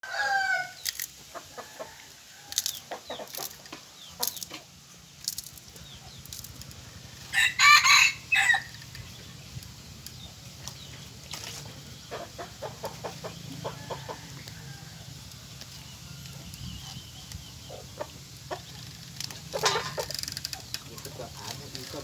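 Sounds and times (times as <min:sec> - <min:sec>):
loud drawn-out crowing call: 0:00.0 - 0:00.8, 0:07.3 - 0:08.9
chickens calling: 0:00.0 - 0:22.0.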